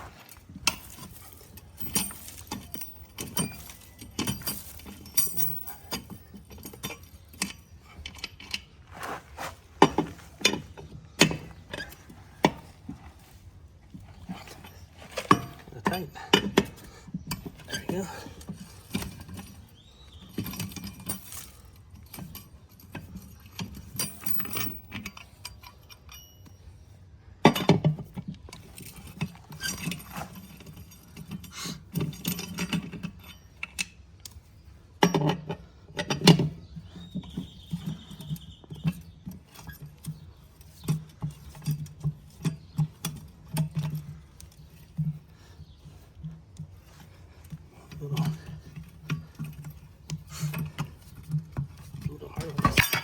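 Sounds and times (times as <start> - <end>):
lug wrench clinking on nuts: 0.3 - 8.8, 9.4 - 34.4, 35.0 - 53.0
loose nuts clinking together: 0.7 - 6.2.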